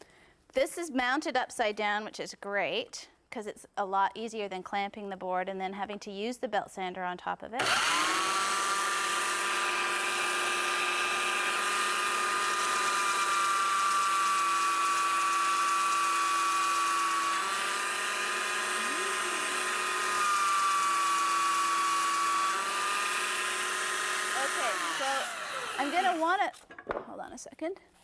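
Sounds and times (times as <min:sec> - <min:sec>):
belt sander motor whine: 0:07.6 - 0:26.4.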